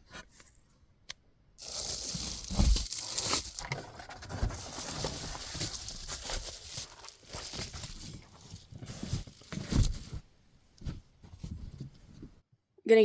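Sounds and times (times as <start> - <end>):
fabric rustling and crinkling: 1.6 - 11.6.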